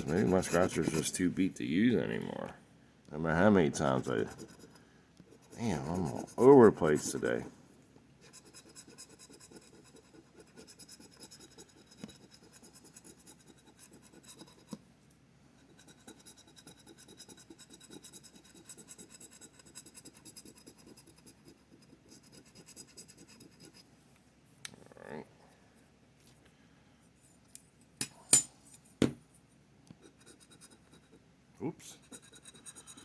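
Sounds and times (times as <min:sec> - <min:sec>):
scratching lottery ticket: 0:00.0 - 0:01.3, 0:03.8 - 0:07.4, 0:08.3 - 0:14.8, 0:15.7 - 0:23.8, 0:31.9 - 0:33.0.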